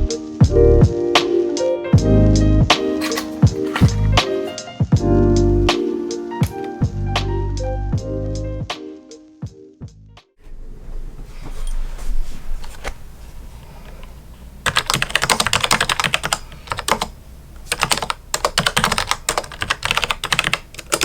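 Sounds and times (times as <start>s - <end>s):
mechanical keyboard typing: 2.9s - 4.2s, 14.6s - 17.1s, 17.7s - 21.0s.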